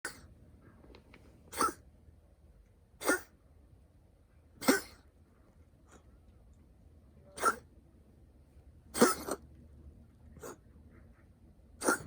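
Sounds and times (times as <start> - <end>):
cat coughing: 1.5 - 1.8, 3.0 - 3.4, 4.6 - 5.1, 7.3 - 7.7, 8.9 - 9.5, 11.8 - 12.0.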